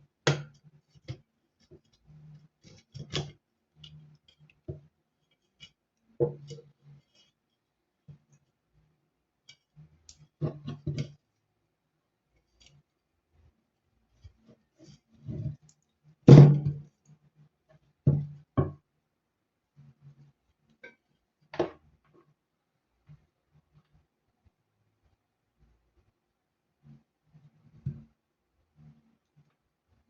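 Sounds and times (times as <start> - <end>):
tools knocking on workbench: 16.3 - 16.8.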